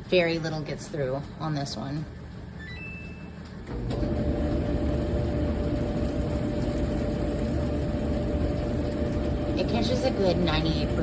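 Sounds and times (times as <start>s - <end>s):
clothes dryer running: 0.0s - 11.0s
short electronic beeps: 2.6s - 3.4s.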